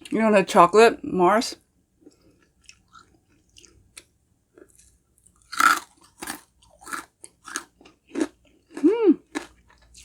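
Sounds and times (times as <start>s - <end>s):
loud candy crunch: 4.6s - 10.0s.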